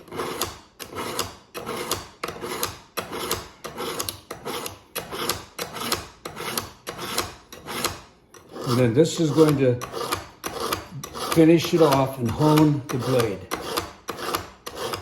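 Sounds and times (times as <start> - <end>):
knife scraping through sharpener: 0.0 - 15.0.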